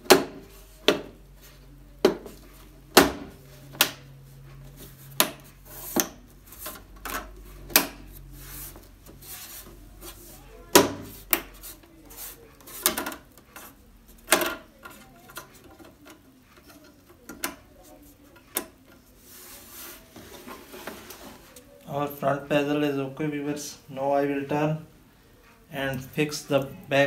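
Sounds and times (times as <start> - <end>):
plastic rubbing: 11.0 - 21.7.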